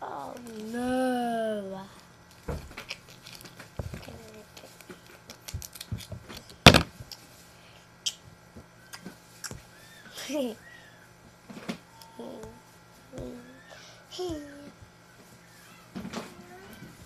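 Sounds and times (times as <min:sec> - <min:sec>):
rustling of craft materials: 0:00.0 - 0:10.5, 0:11.2 - 0:17.0.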